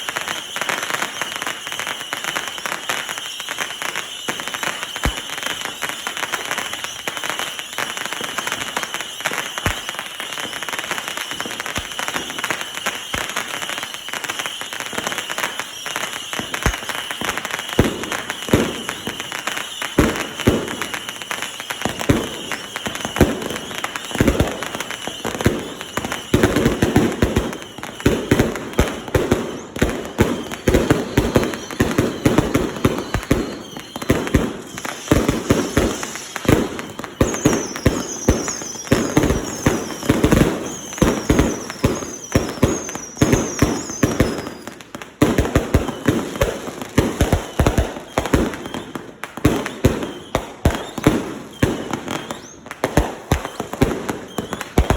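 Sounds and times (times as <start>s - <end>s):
falling high whistles: 0.0s - 44.9s, 50.0s - 52.8s
fireworks bangs: 0.0s - 54.9s.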